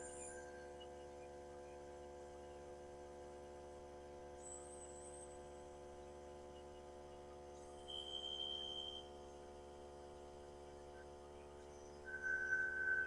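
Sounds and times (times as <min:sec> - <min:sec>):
faint high whine: 0:00.0 - 0:13.0
faint steady hum: 0:00.0 - 0:13.0.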